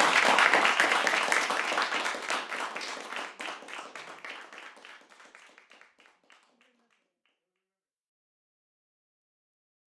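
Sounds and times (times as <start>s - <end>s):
audience applause: 0.0s - 6.8s.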